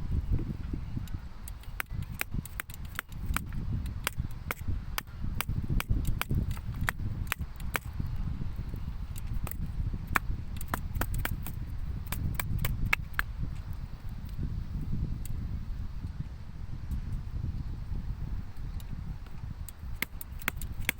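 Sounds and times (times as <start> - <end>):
firewood clicking and snapping: 1.4 - 8.2, 9.1 - 13.7, 19.6 - 20.9.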